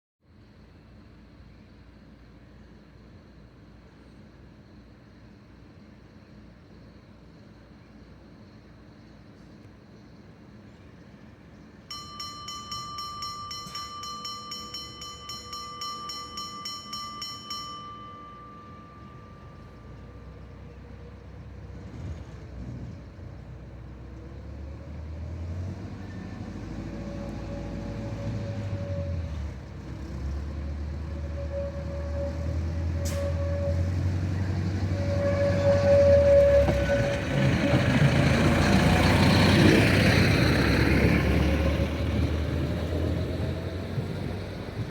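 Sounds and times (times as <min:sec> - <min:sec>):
steady tone: 0:11.9 - 0:20.6
railcar bell ringing: 0:11.9 - 0:20.8, 0:31.2 - 0:33.9, 0:34.8 - 0:38.0
diesel engine running up: 0:18.8 - 0:44.9.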